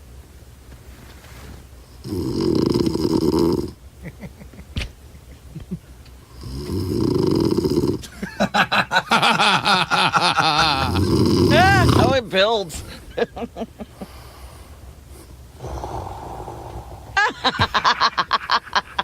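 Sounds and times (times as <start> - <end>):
man snoring: 2.0 - 3.8, 6.3 - 8.1, 10.6 - 12.2, 15.6 - 18.1.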